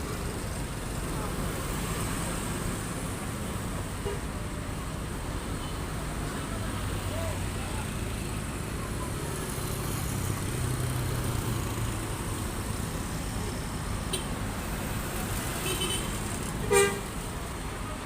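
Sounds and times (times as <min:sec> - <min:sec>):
road traffic noise: 0:00.0 - 0:18.0
bus horn blast: 0:15.6 - 0:17.1.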